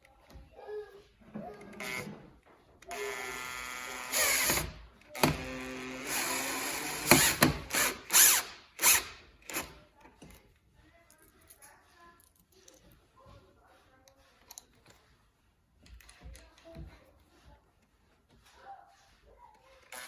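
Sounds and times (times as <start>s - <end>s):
power drill driving screws: 1.6s - 2.2s, 2.8s - 9.8s.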